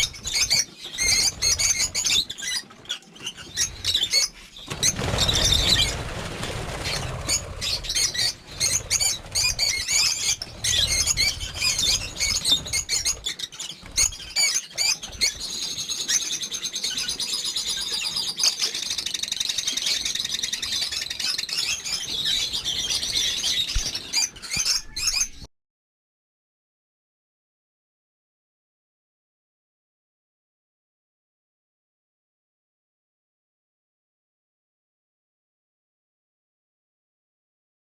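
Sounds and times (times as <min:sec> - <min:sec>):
lovebirds chirping and squawking: 0:00.0 - 0:25.5.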